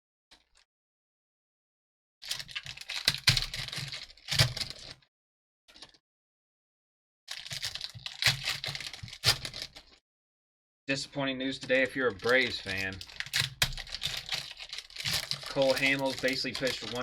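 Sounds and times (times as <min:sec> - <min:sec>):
foil packs crinkling and tearing: 0:02.2 - 0:04.9, 0:07.3 - 0:10.0, 0:11.6 - 0:17.0.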